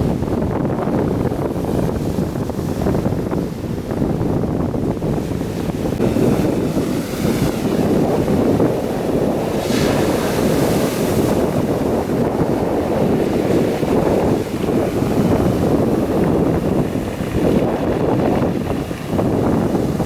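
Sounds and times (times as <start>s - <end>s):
surf breaking on beach: 0.0s - 20.0s
wind rumbling on microphone: 0.0s - 20.0s.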